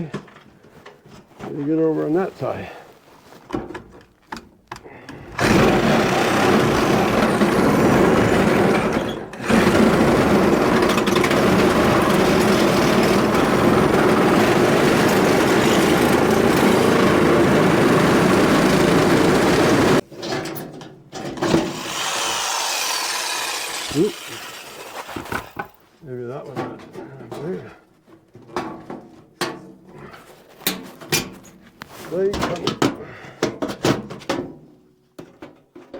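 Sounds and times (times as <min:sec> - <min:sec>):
power saw cutting wood: 0:05.4 - 0:20.0, 0:21.4 - 0:25.7.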